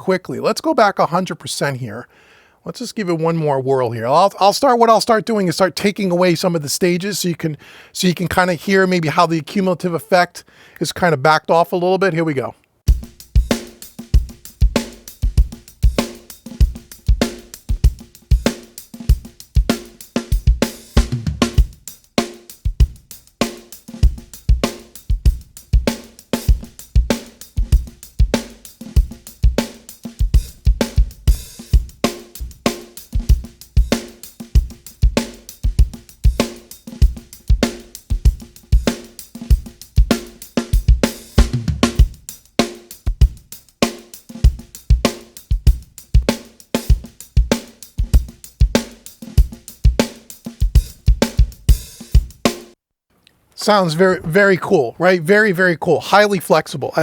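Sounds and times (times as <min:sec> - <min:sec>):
drum kit loop: 0:12.9 - 0:52.6, 0:53.6 - 0:57.0.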